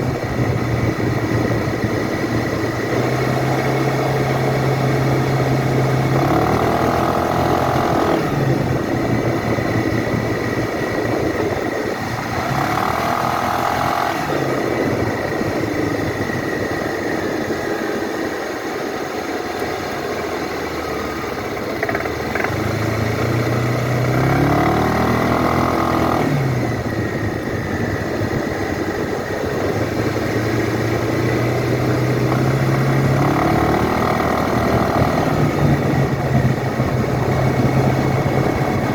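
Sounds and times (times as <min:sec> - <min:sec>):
scooter engine idling and revving: 0:00.0 - 0:38.9
engine knocking: 0:14.7 - 0:23.8.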